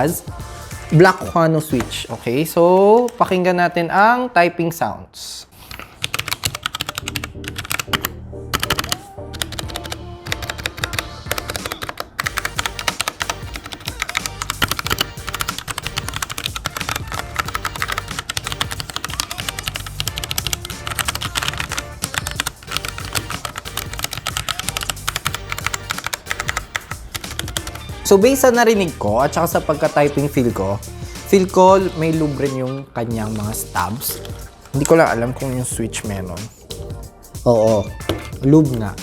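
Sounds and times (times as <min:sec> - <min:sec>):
background music: 0:00.0 - 0:04.8, 0:05.7 - 0:39.0
fast typing on mechanical keyboard: 0:05.7 - 0:27.9.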